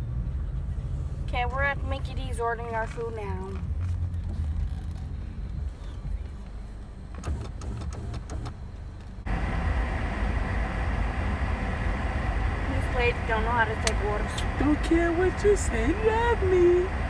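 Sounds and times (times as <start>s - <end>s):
car engine idling: 4.1s - 17.0s.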